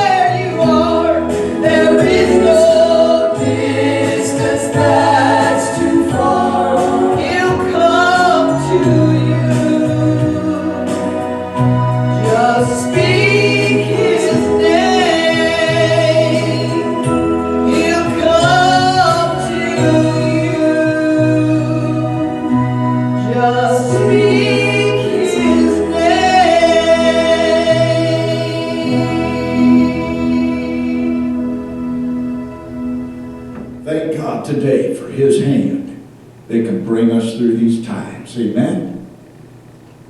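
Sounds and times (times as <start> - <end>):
choir singing gospel music: 0.0 - 37.2
steady bass accompaniment: 0.0 - 40.0.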